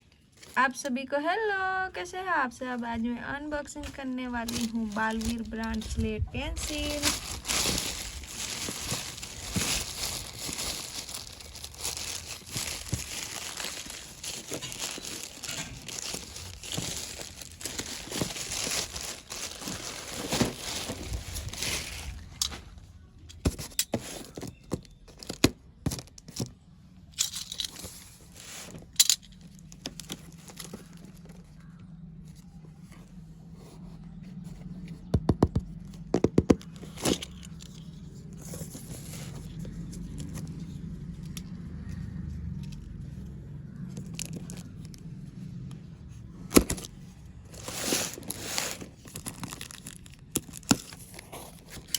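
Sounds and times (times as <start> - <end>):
packaging crinkling and tearing: 3.8 - 22.8, 27.4 - 31.8, 43.7 - 45.1, 46.4 - 51.9
pencils clicking and tapping: 35.1 - 37.9.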